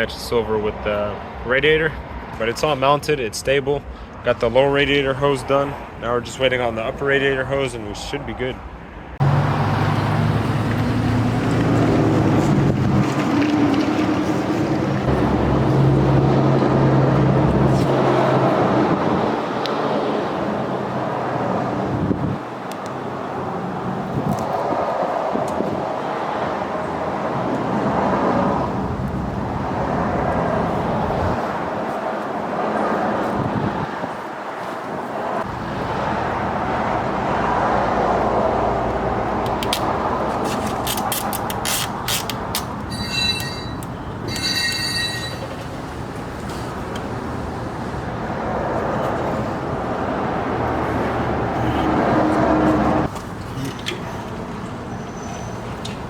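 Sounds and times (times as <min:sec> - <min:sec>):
road rumble: 0:00.0 - 0:56.0
short high-pitched squeals: 0:42.9 - 0:45.7.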